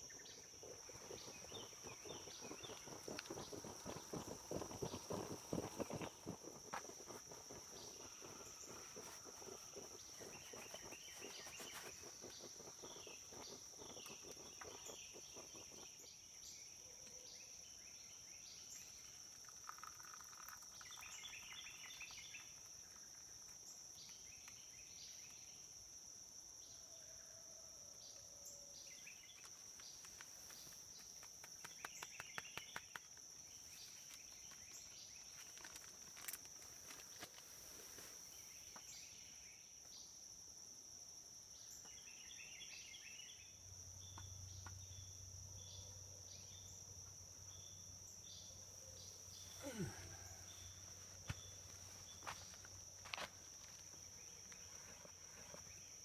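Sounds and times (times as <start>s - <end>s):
insect chirping: 0.0s - 56.0s
insects droning: 0.0s - 56.0s.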